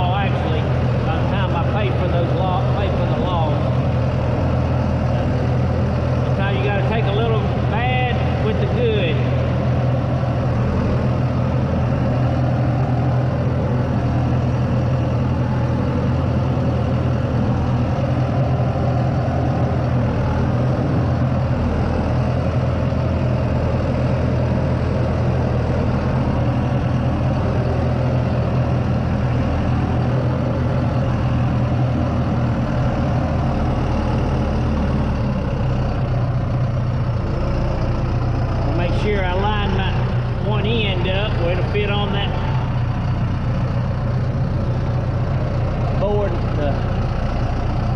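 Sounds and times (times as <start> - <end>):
heavy machine engine running: 0.0 - 47.9.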